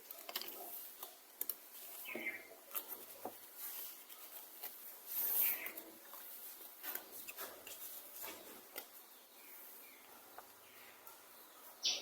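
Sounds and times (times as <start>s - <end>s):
faint scratching and clicks: 0.0s - 9.1s.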